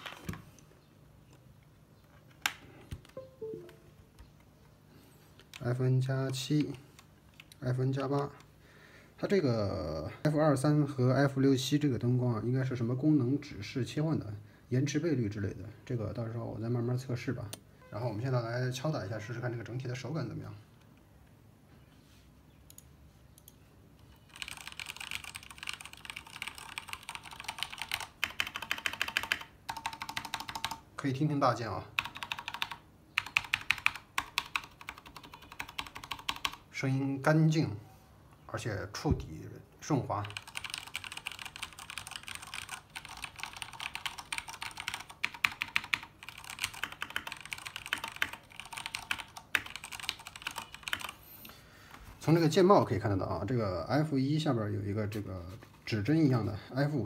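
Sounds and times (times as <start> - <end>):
mechanical keyboard typing: 24.3 - 30.8, 32.0 - 36.6, 40.2 - 51.2.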